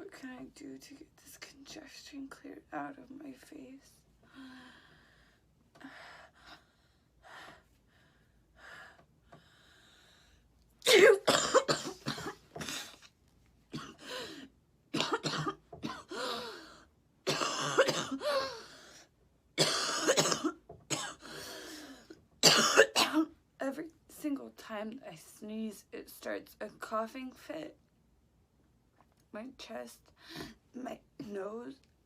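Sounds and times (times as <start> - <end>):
faint breaths: 4.2 - 10.5
woman coughing: 10.9 - 13.0, 13.7 - 14.1, 14.9 - 16.4, 17.3 - 18.5, 19.6 - 21.4, 22.4 - 23.3.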